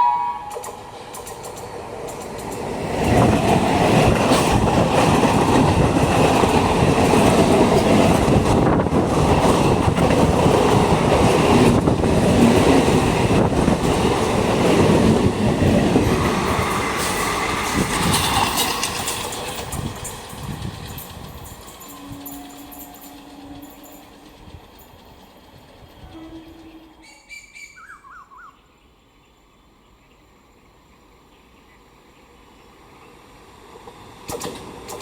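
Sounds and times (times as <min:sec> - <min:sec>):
train rumbling past: 0:00.0 - 0:35.0
wheels clattering over rail joints: 0:00.6 - 0:26.8.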